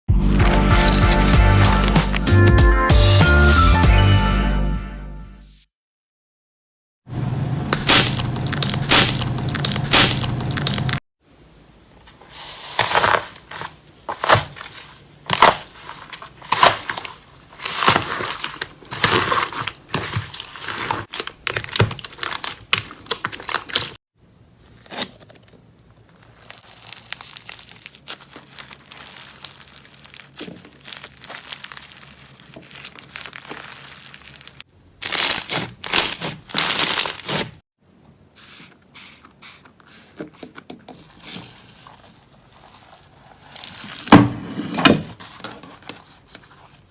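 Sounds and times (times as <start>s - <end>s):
slime squeezed by hand crackling: 26.1s - 37.5s.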